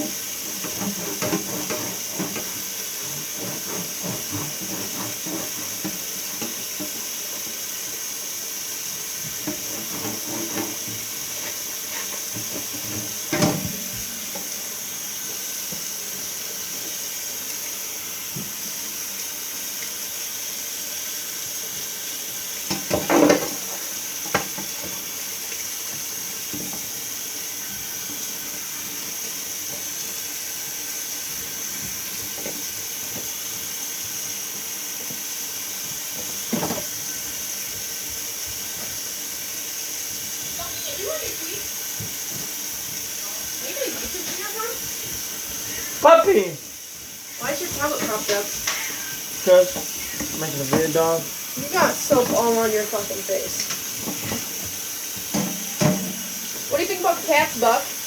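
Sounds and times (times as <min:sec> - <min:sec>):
items clattering against sink: 0:00.0 - 0:07.6, 0:09.1 - 0:14.6, 0:22.6 - 0:27.0, 0:36.1 - 0:37.4, 0:40.3 - 0:46.7, 0:47.4 - 0:58.0
tap water running into sink: 0:00.0 - 0:58.0.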